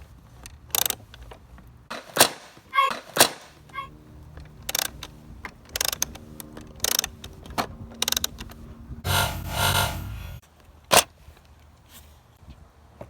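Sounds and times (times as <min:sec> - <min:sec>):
toys clicking and rattling: 0:04.4 - 0:08.6
buzzing sound: 0:09.0 - 0:10.4.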